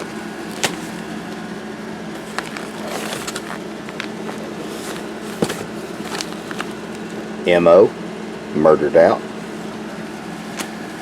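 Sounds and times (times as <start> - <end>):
coffee bags crinkling: 0.0 - 7.5, 10.3 - 11.0
steady low hum: 0.0 - 11.0.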